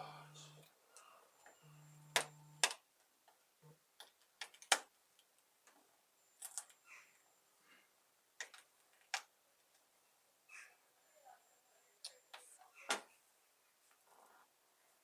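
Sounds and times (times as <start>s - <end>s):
low steady hum: 0.0s - 0.7s.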